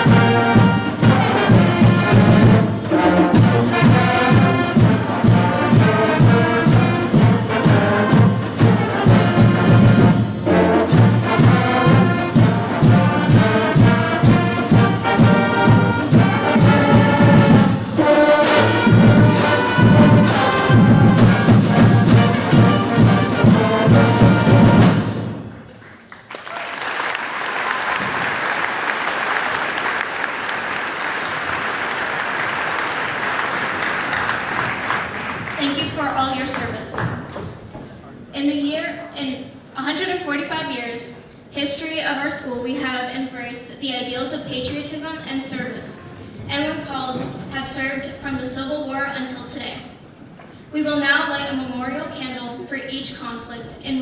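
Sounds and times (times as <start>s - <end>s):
brass band playing: 0.0s - 25.8s, 27.6s - 36.9s
audience applauding: 25.7s - 36.2s.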